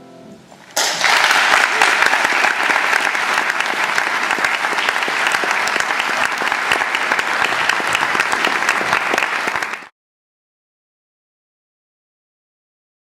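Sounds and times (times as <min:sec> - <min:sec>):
audience applauding: 0:00.7 - 0:09.9.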